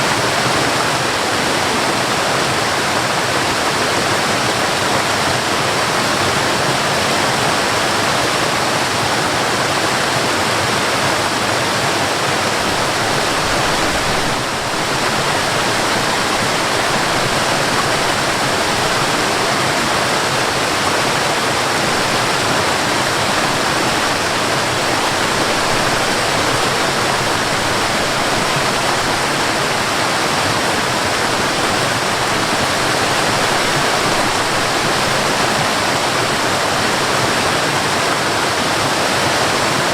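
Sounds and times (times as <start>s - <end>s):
waterfall pouring: 10.5s - 39.9s.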